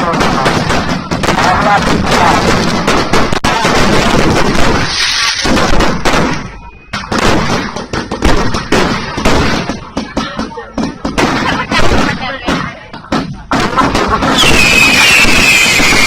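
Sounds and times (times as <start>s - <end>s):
firework hiss: 0.0s - 10.1s, 13.4s - 16.0s
fireworks bangs and crackles: 0.0s - 16.0s.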